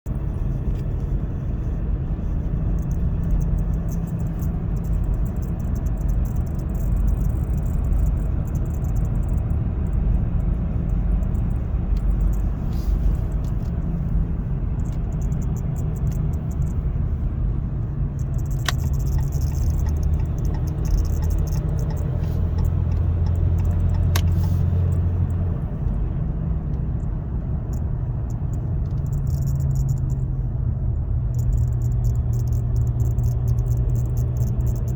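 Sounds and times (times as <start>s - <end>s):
road and engine rumble: 0.0s - 34.9s
horn button buzzing and rattling: 18.2s - 24.5s.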